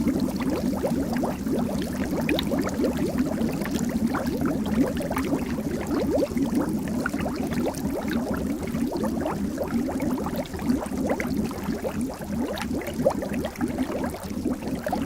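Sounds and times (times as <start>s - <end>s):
water bubbling: 0.0s - 15.0s.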